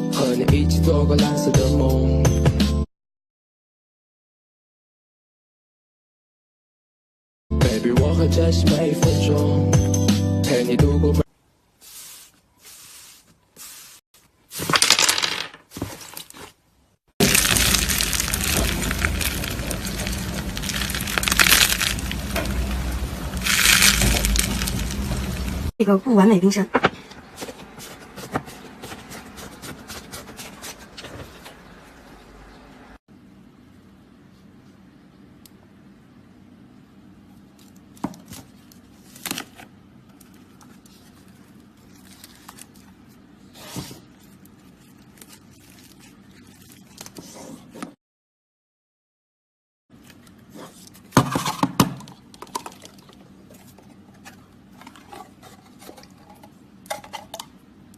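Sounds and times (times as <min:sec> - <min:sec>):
slime crackling and popping: 0:17.2 - 0:25.7.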